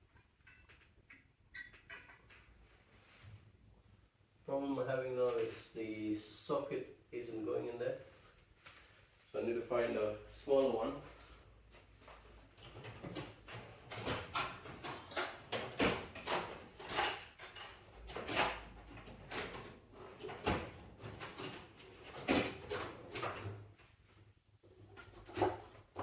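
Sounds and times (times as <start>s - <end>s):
metal tools clattering: 12.8s - 19.8s.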